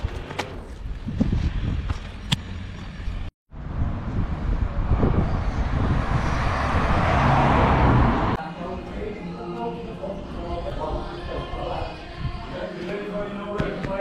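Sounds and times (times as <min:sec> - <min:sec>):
vehicle passing: 0:02.6 - 0:09.1.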